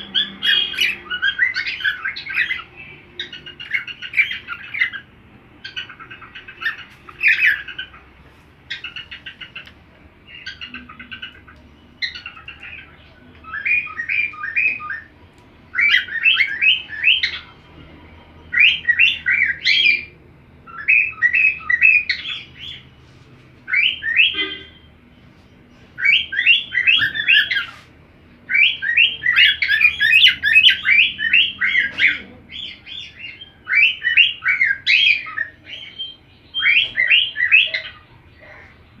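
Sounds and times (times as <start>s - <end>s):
cockatiel chirping: 0.0s - 8.0s, 15.7s - 17.5s, 23.7s - 24.8s, 26.0s - 27.8s, 28.5s - 38.6s.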